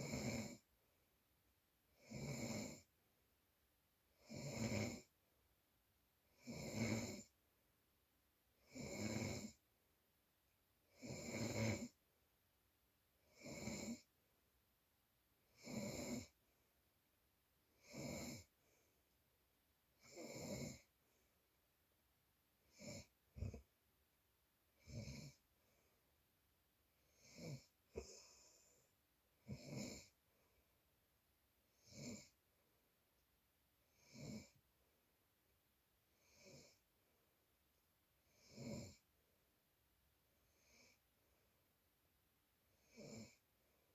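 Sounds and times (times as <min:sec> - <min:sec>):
person snoring: 0:27.2 - 0:28.7, 0:29.5 - 0:30.1.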